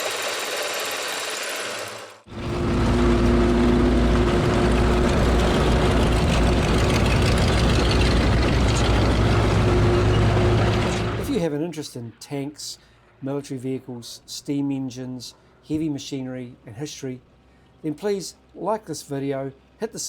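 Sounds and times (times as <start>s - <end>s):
engines rumbling and droning: 1.8s - 11.5s.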